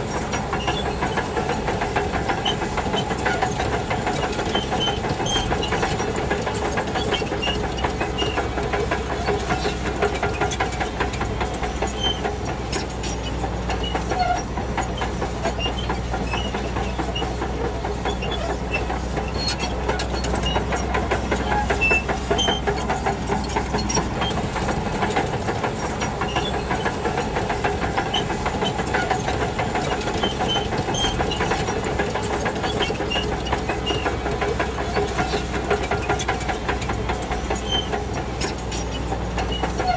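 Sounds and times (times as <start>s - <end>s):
bulldozer diesel engine running: 0.0s - 39.9s
steel tracks clattering: 0.0s - 39.9s
short high squeaks: 11.9s - 24.4s, 30.2s - 31.7s, 37.6s - 39.9s.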